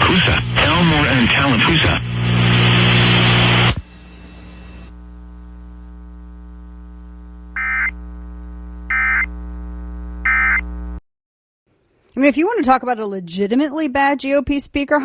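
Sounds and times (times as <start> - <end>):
electrical hum with hiss: 0.0 - 11.0
alert data tone bursts: 7.6 - 8.0, 8.9 - 9.3, 10.2 - 10.7.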